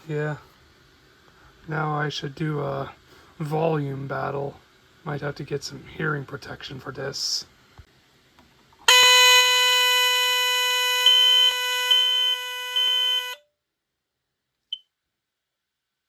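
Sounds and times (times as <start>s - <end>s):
smoke alarm low buzzing tone: 8.8s - 13.6s
smoke detector high beep: 8.9s - 13.4s.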